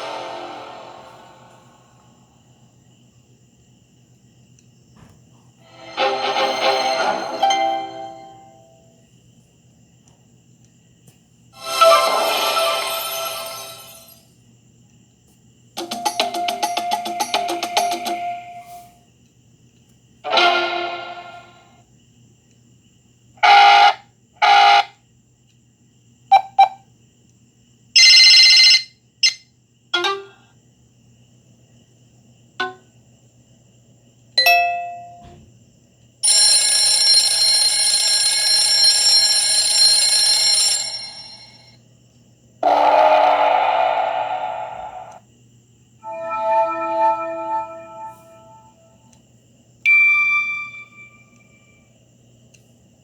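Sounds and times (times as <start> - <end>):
phone ringtone: 28.0 - 28.9, 36.2 - 41.6, 46.0 - 48.8, 49.9 - 51.4.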